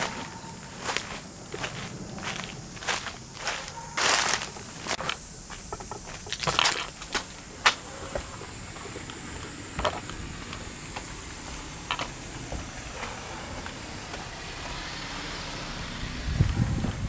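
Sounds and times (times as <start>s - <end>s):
insects chorus: 0.0s - 17.0s.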